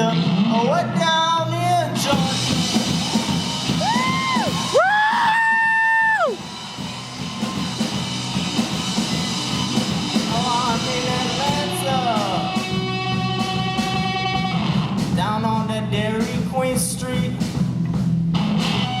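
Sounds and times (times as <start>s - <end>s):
live band playing blues-rock: 0.0s - 19.0s
bending guitar notes: 6.3s - 15.2s, 17.7s - 19.0s.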